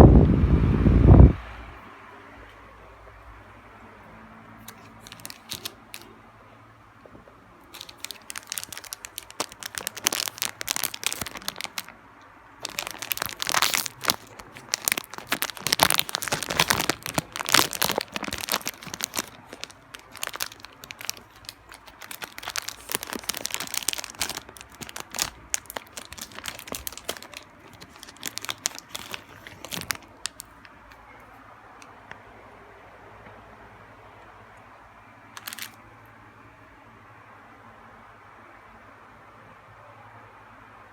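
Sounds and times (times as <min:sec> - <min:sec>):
plastic wrapper crinkling: 0:04.6 - 0:06.1, 0:07.6 - 0:12.0, 0:12.6 - 0:30.9, 0:35.4 - 0:35.8.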